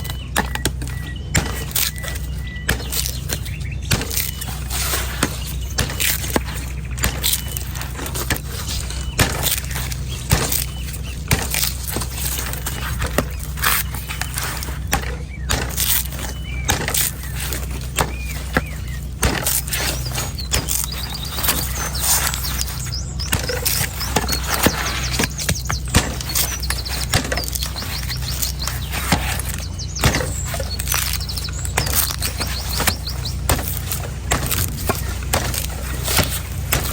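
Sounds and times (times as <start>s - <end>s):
knife chopping coconut husk: 0.0s - 36.9s
steady low hum: 0.0s - 36.9s.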